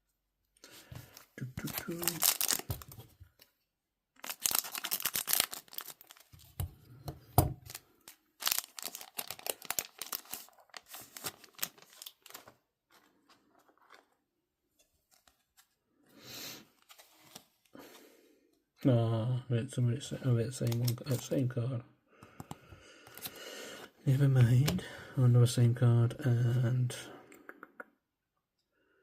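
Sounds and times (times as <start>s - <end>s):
cards rustling and clicking: 0.9s - 3.5s, 4.2s - 6.7s, 7.6s - 14.2s, 16.8s - 18.0s, 20.5s - 21.4s, 22.3s - 23.4s
wrapper tearing and crinkling: 1.5s - 3.1s, 4.2s - 6.6s, 7.6s - 12.6s.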